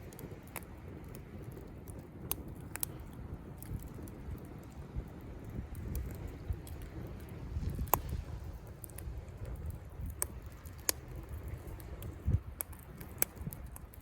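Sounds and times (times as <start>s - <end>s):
campfire crackling: 0.0s - 14.0s
sharp pops of burning wood: 0.0s - 14.0s
steady low rumble: 0.0s - 14.0s.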